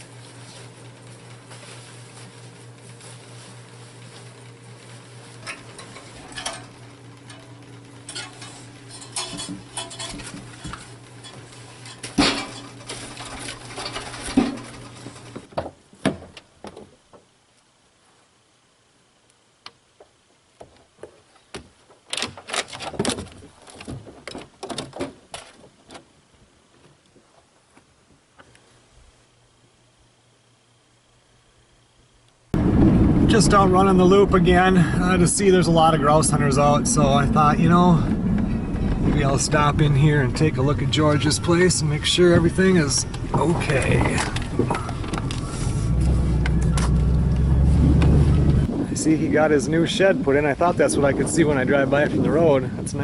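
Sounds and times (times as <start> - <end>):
low hum: 0.0 - 15.5, 29.8 - 52.4
dishes and pans clattering: 8.1 - 14.8.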